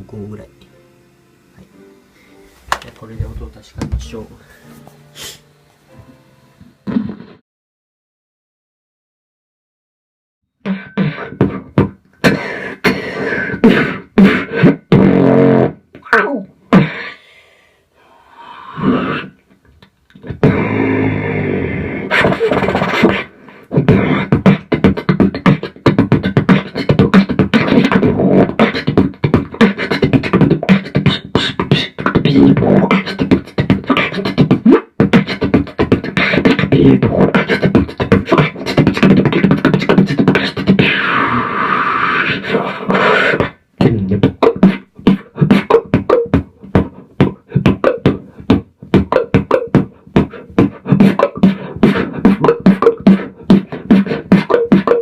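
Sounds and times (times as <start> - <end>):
beatboxing through amplifier: 0.0 - 0.7, 2.7 - 4.5, 6.8 - 7.4, 10.6 - 17.2, 18.4 - 55.0
mouth hissing effect: 5.0 - 5.6, 16.8 - 19.4, 30.9 - 43.7.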